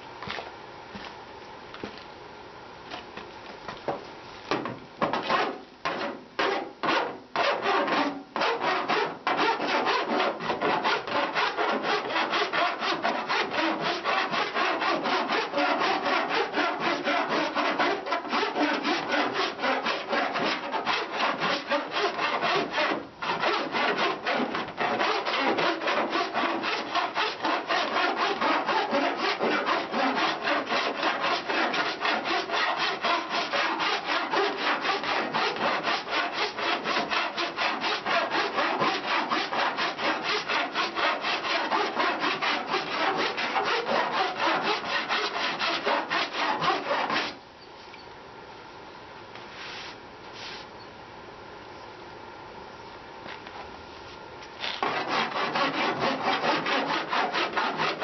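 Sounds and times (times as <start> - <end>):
hand file rasping on metal: 5.1 - 47.4, 54.8 - 58.0.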